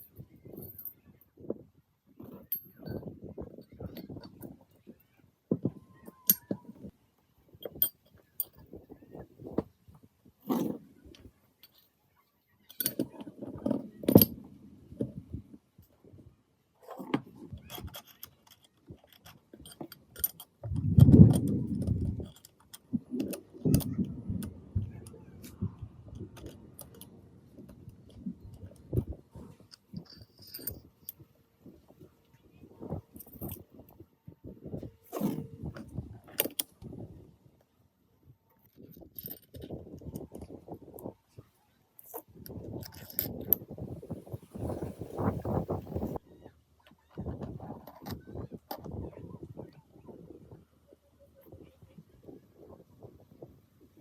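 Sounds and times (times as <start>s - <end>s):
metal parts clinking and knocking: 2.2s - 4.6s, 5.7s - 6.8s, 7.6s - 8.8s, 12.6s - 14.4s, 16.8s - 31.2s, 32.8s - 33.9s, 35.0s - 36.8s, 38.6s - 41.1s, 42.0s - 46.2s.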